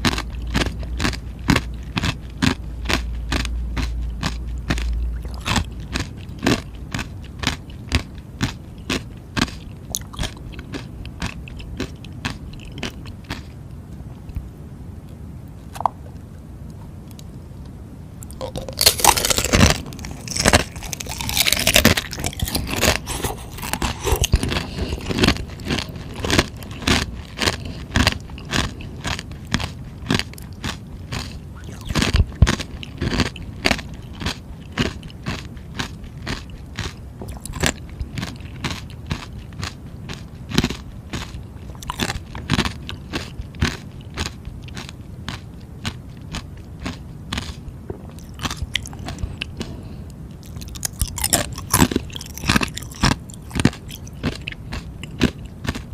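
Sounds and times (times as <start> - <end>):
person crunching ice: 18.4 - 39.3, 50.5 - 55.8.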